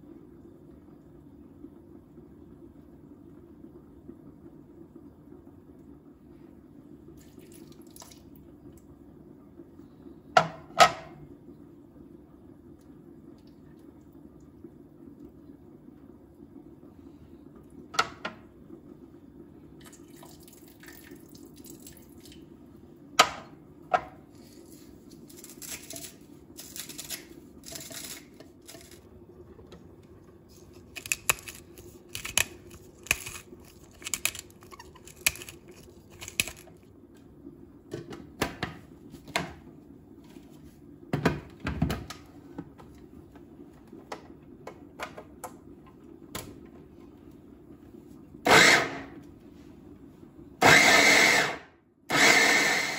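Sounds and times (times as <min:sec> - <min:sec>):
low steady hum: 0:00.0 - 0:50.7.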